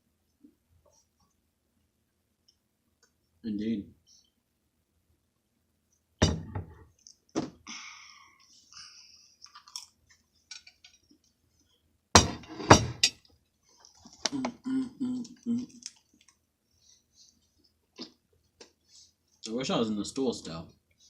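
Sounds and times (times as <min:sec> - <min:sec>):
cutlery and dishes clinking: 0:12.2 - 0:13.2.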